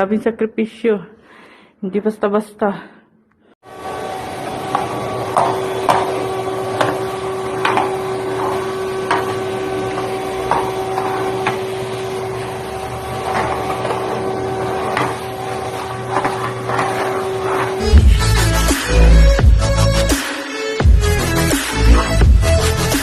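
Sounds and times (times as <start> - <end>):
machine hum: 3.6 - 20.1.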